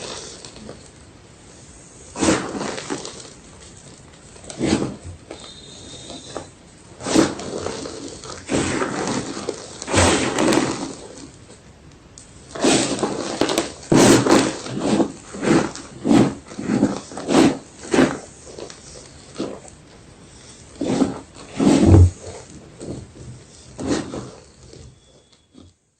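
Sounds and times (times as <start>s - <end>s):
chalk being crunched: 2.1s - 11.4s, 12.4s - 22.6s.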